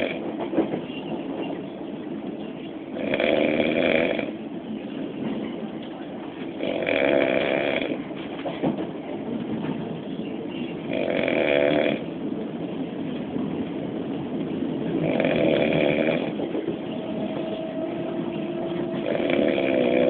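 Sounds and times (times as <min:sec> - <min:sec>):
moving train rumble: 0:00.0 - 0:20.0
man snoring: 0:03.0 - 0:04.3, 0:06.6 - 0:08.0, 0:10.9 - 0:12.0, 0:15.1 - 0:16.3, 0:19.0 - 0:20.0.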